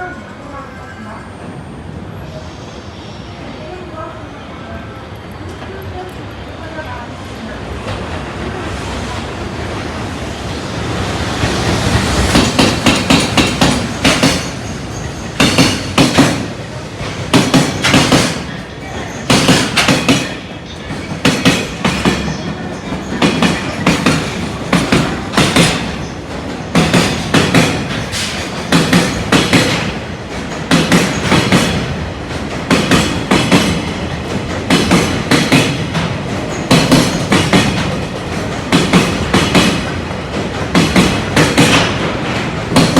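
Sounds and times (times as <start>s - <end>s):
train rolling rumble: 0.0s - 42.9s
train wheels clacking over rail joints: 11.4s - 42.9s.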